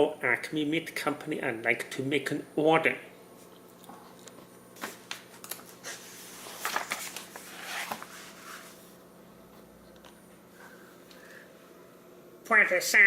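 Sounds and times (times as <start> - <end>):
paper rustling: 4.8 - 8.8.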